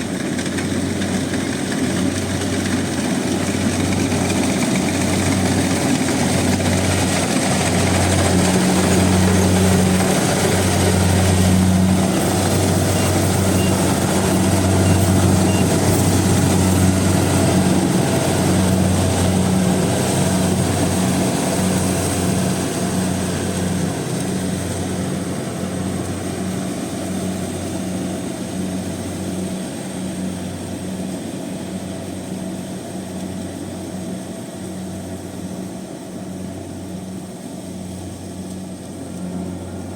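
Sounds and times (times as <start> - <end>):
threshing machinery rush: 0.0 - 28.2
engine humming low: 0.0 - 39.9.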